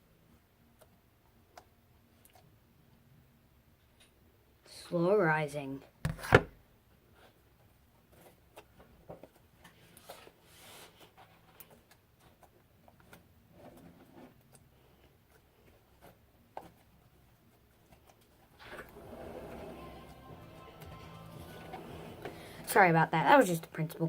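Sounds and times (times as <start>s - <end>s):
soft rustles of handling: 7.0s - 19.2s.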